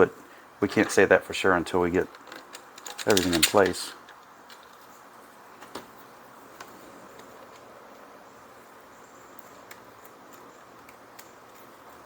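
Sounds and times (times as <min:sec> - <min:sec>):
low steady hiss: 0:00.0 - 0:12.0
small parts clicking: 0:02.1 - 0:04.8.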